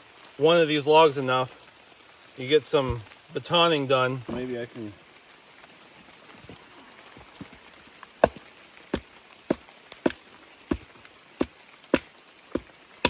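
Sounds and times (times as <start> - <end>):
light rain hiss: 0.0 - 13.0
blade knocking through wood: 9.0 - 12.7.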